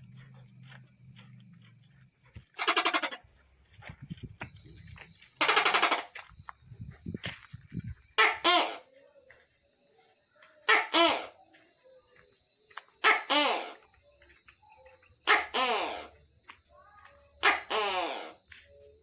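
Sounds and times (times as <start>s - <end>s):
insects trilling: 0.0s - 19.0s
gecko calling: 2.5s - 3.3s, 5.4s - 6.2s, 8.2s - 9.0s, 10.6s - 11.6s, 13.0s - 14.0s, 14.7s - 16.2s, 17.4s - 19.0s.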